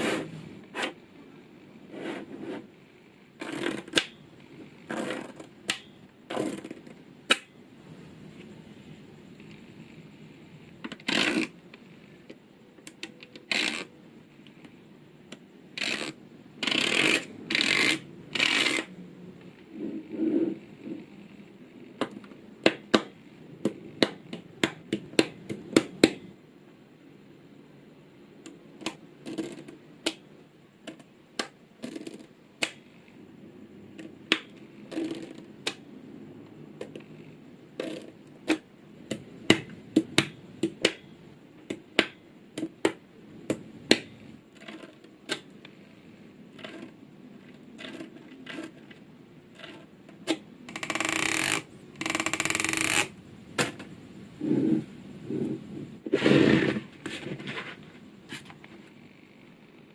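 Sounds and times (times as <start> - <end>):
magnetic balls clicking together: 49.6 - 53.1
rattling sliding noise: 56.1 - 58.5.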